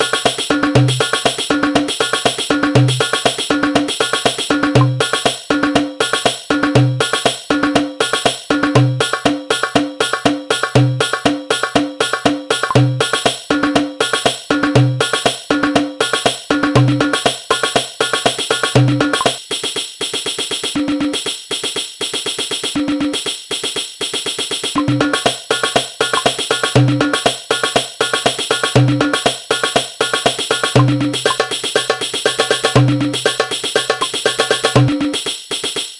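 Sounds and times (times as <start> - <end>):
darbuka rhythm: 0.0 - 35.9.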